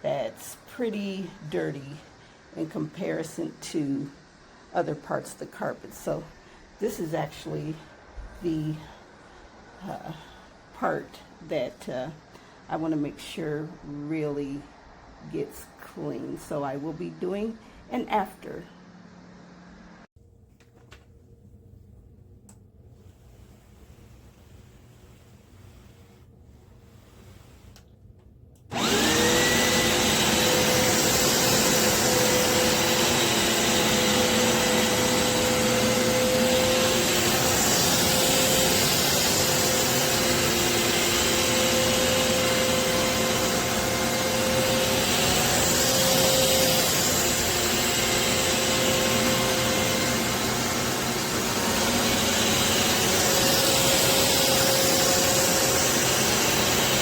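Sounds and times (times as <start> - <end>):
carpet cleaner suction motor whine: 28.7 - 57.0.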